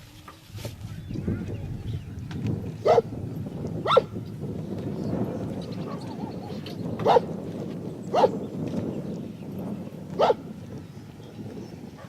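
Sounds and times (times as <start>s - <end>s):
dog barking: 2.8s - 3.1s, 3.8s - 4.1s, 7.0s - 7.3s, 8.1s - 8.4s, 10.2s - 10.4s.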